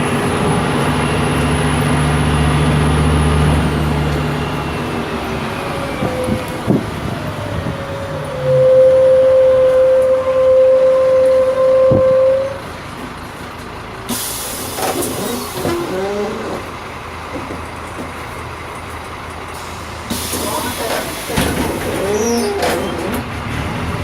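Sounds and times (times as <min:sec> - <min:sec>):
loud buzzer tone: 0:08.4 - 0:12.6
compressed air hissing: 0:14.1 - 0:16.0.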